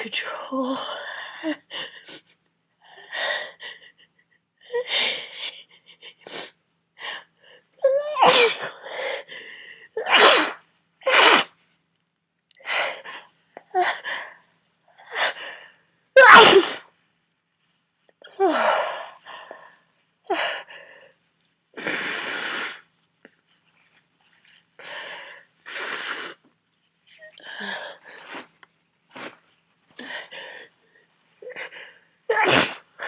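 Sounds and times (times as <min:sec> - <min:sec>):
man sneezing: 0:08.2 - 0:08.6, 0:10.1 - 0:11.5, 0:16.2 - 0:16.8, 0:32.3 - 0:32.8.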